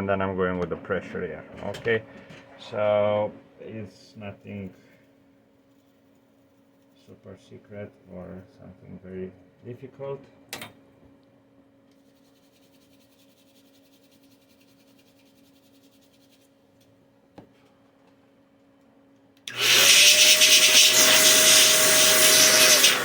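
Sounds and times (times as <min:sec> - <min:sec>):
cooling fan whine: 0:00.0 - 0:05.5.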